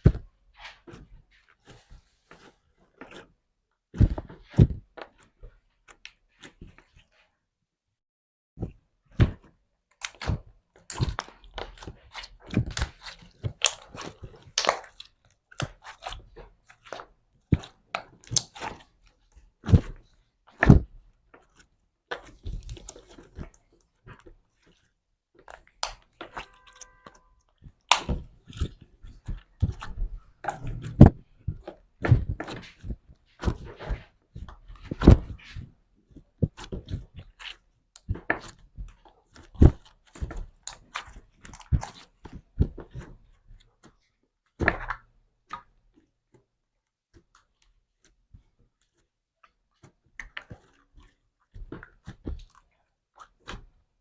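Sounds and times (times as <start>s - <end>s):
slime squelching by hand: 9.9s - 45.8s, 47.2s - 54.0s
slime squeak: 26.2s - 27.5s.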